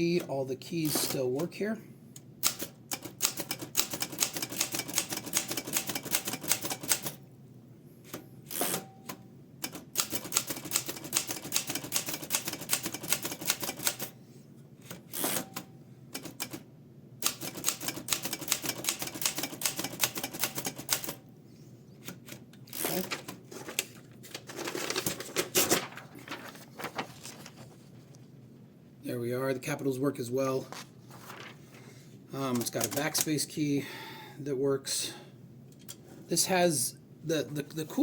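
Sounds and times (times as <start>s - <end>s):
manual typewriter keystrokes: 2.4s - 7.2s, 8.5s - 14.1s, 14.8s - 16.6s, 17.2s - 21.2s, 32.5s - 33.3s.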